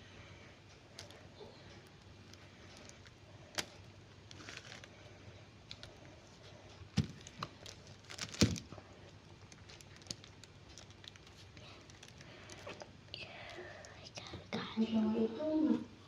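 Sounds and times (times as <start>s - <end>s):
crinkles and clicks: 0.7s - 14.3s
handling noises: 0.9s - 12.8s.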